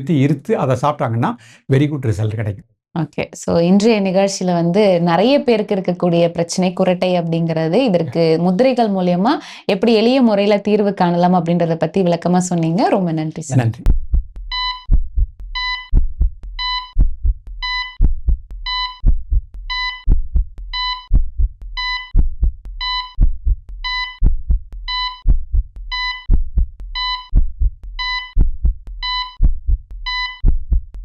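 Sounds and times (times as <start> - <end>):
heartbeat thumps: 13.8 - 31.0
heart monitor beeps: 14.5 - 30.8.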